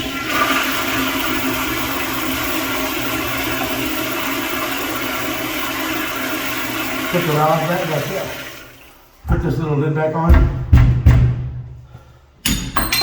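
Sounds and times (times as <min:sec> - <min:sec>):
toilet flushing: 0:00.0 - 0:09.3.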